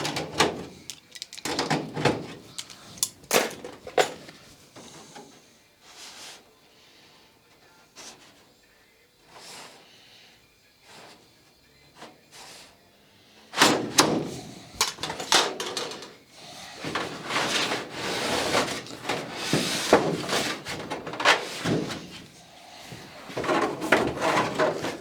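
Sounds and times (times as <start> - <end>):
scraping and rubbing on sheet metal: 13.5 - 25.0.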